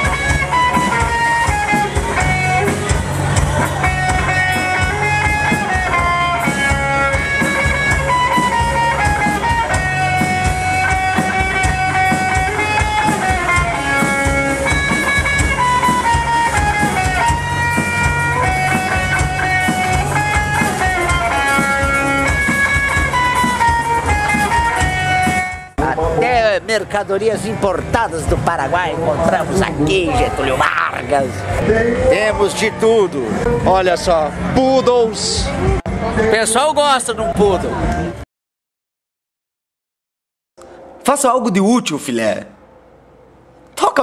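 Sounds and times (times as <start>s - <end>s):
drum kit beat: 0.0s - 25.9s
lead guitar bending notes: 0.0s - 26.2s
rhythm guitar: 0.0s - 32.1s.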